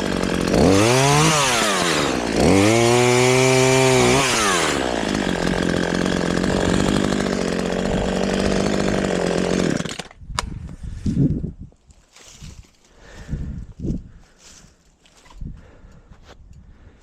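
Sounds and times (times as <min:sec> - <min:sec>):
chainsaw engine idling: 0:00.0 - 0:10.1.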